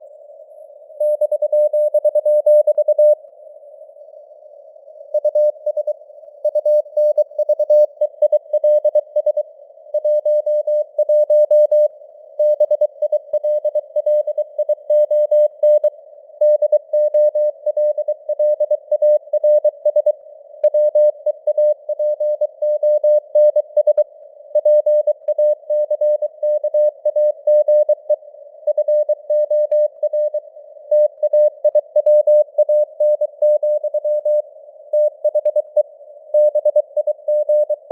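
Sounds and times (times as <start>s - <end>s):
faint radio noise hiss: 0.0s - 1.2s, 2.8s - 7.0s.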